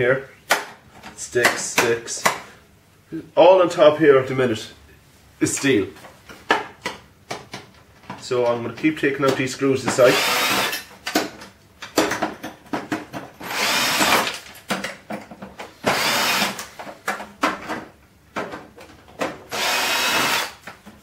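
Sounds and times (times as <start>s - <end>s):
power drill backing out screws: 10.1s - 10.8s, 13.4s - 14.4s, 15.9s - 16.6s, 19.5s - 20.6s.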